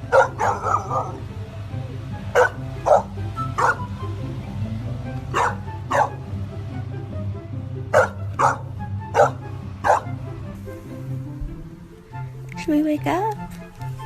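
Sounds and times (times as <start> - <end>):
background music: 0.0 - 14.0
dog barking: 0.1 - 1.2, 2.3 - 3.9, 5.3 - 6.2, 7.9 - 10.1.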